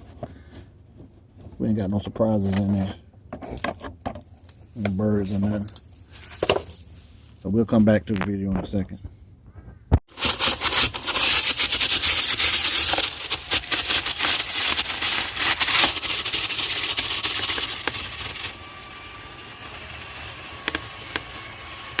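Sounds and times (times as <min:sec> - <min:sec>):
brush rattling against duct walls: 0:10.1 - 0:18.0
power drill spinning duct brush: 0:10.1 - 0:22.0.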